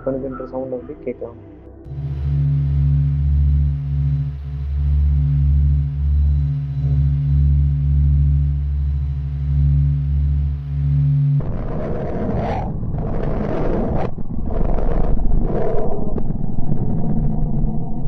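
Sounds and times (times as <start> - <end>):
deep electronic drone: 0.0 - 18.0
rushing roar-like noise: 1.9 - 18.0.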